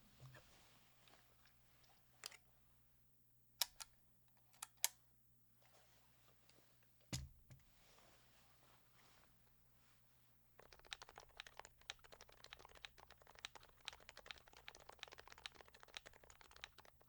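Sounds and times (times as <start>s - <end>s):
keyboard keystrokes clacking: 10.6s - 17.0s.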